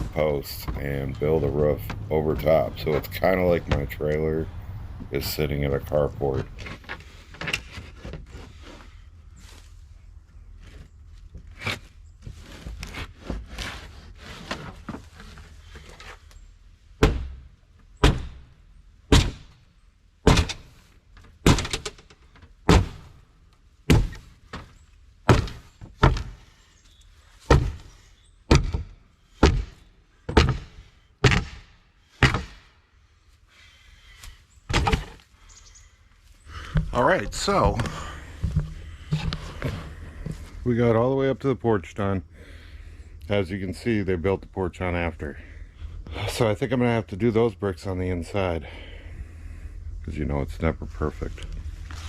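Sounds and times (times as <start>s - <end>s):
dull thunks: 17.0s - 19.6s, 20.2s - 23.2s, 23.9s - 26.5s, 27.4s - 32.7s, 34.7s - 35.2s, 36.5s - 40.6s.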